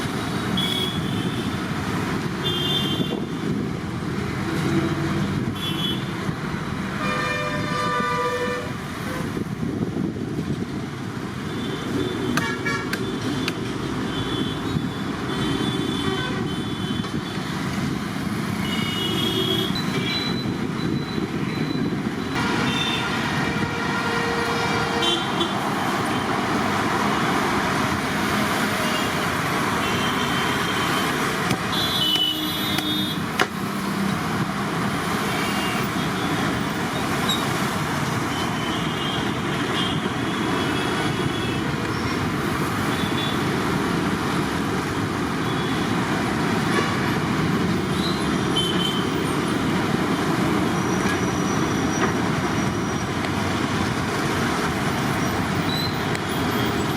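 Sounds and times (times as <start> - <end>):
road traffic: 0.0 - 56.9
vehicle horn toots: 7.0 - 8.7, 22.4 - 25.6.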